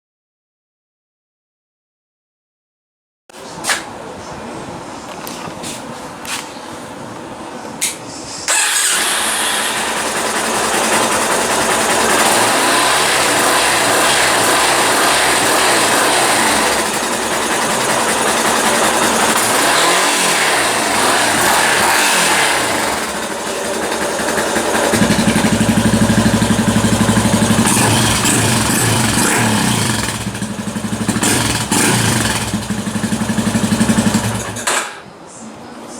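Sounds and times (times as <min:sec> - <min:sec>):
motorcycle engine revving: 0:08.5 - 0:34.7.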